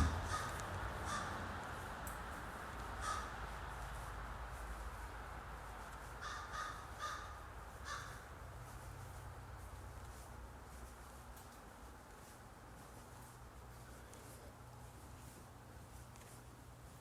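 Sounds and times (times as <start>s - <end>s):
faint caw-like bird calls: 0.0s - 1.9s, 2.5s - 4.8s, 5.8s - 9.0s.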